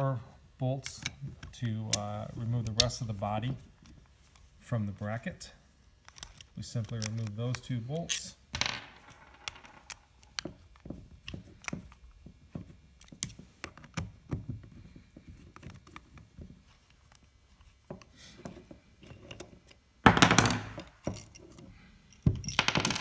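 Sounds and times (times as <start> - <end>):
metal parts handled: 20.6 - 23.0.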